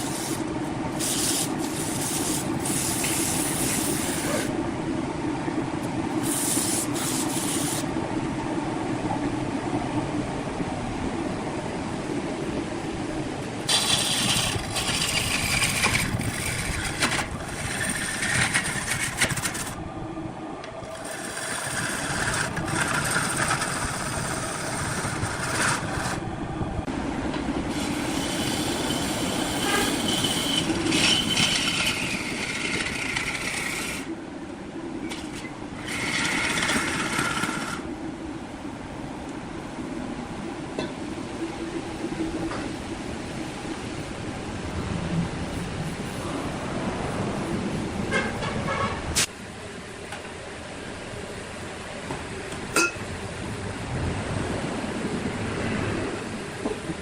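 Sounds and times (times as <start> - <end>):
wood lathe rumbling: 0.0 - 4.6, 13.6 - 19.8, 20.6 - 26.2, 26.8 - 34.2, 35.1 - 37.9
turning tool scraping wood: 1.0 - 4.5, 13.7 - 19.8, 20.8 - 26.2, 27.7 - 34.1, 35.1 - 37.8.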